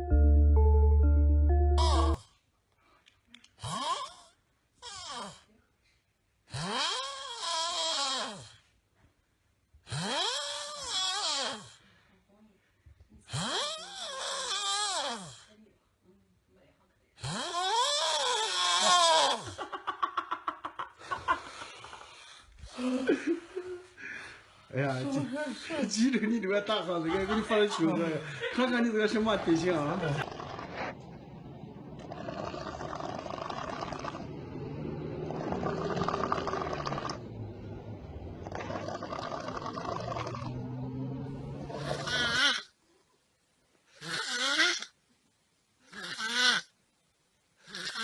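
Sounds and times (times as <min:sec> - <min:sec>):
person snoring: 0:32.0 - 0:42.6.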